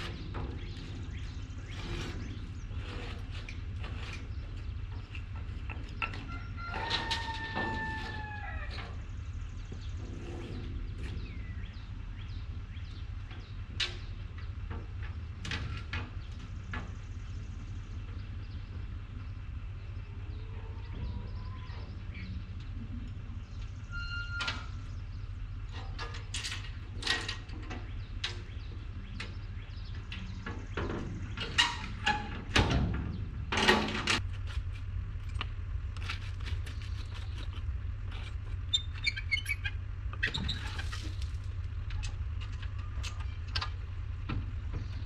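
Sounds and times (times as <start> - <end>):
knocks and scrapes: 0.0 - 11.8, 25.7 - 45.0
machine engine humming: 0.0 - 45.0.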